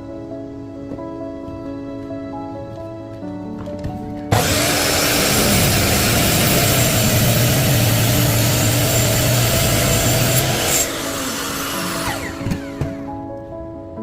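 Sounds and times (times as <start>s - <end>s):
power saw cutting log: 4.3s - 13.2s.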